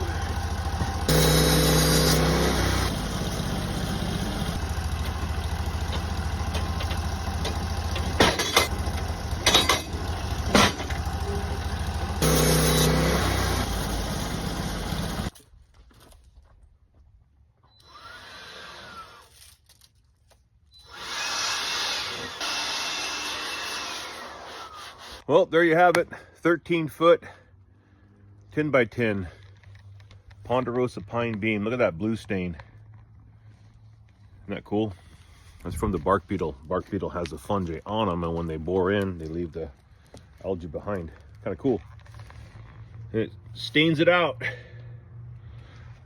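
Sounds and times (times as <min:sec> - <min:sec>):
sawmill engine running: 0:00.0 - 0:15.3, 0:20.9 - 0:25.2.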